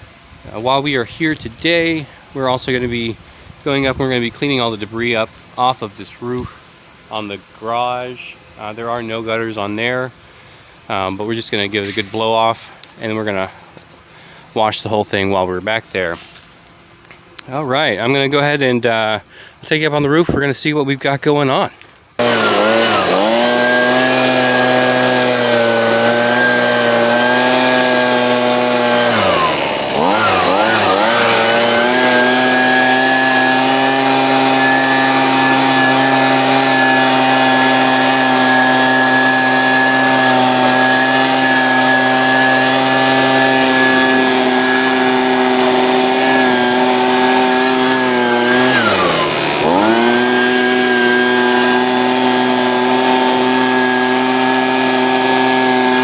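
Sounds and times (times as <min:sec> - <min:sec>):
leaf blower engine running: 0:22.2 - 0:56.0.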